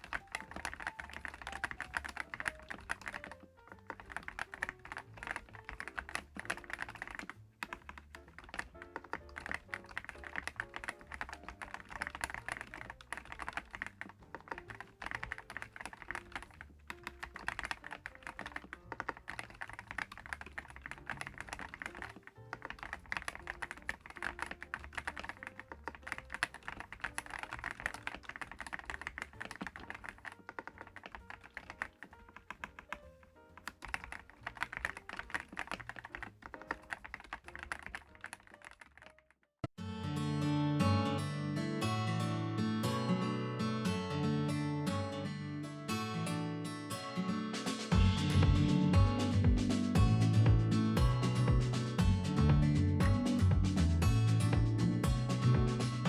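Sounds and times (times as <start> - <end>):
background music: 0.0 - 38.7, 39.8 - 56.0
mechanical keyboard typing: 0.0 - 39.4.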